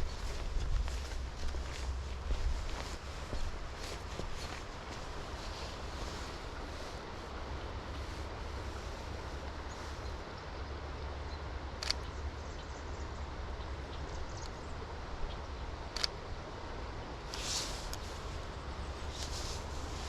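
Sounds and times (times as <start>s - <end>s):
wind rumble on microphone: 0.0s - 11.1s
light rain: 0.0s - 20.0s
wind in forest: 0.0s - 20.0s.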